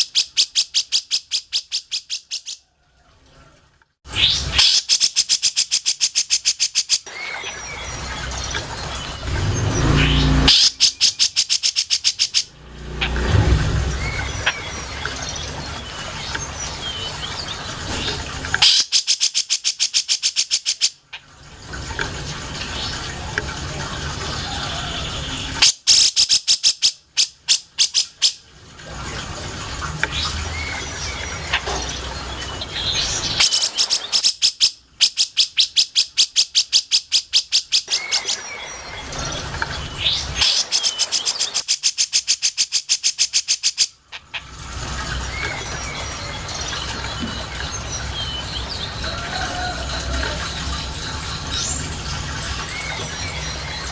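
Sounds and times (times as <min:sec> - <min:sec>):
bird chirps: 0:04.2 - 0:15.6
bird rattling trills: 0:04.2 - 0:16.2.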